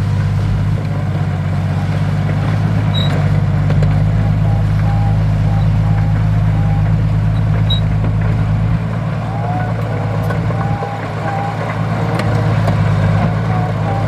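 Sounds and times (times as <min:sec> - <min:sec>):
large diesel engine running: 0:00.0 - 0:14.0.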